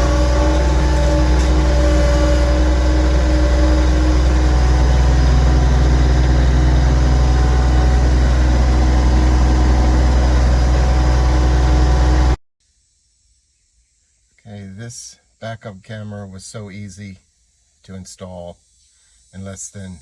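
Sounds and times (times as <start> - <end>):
vehicle engine rumbling: 0.0 - 12.4.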